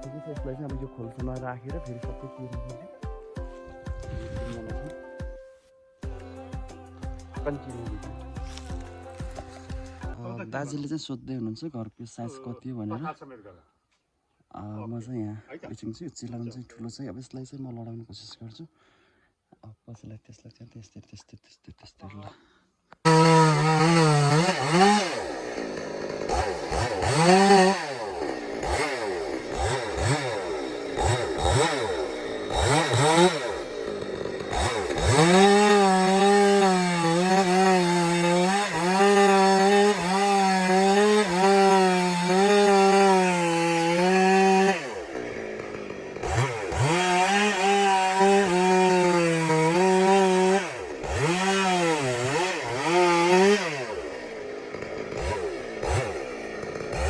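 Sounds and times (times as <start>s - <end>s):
chainsaw revving and cutting wood: 0.0s - 5.1s, 6.0s - 10.2s, 23.0s - 57.0s.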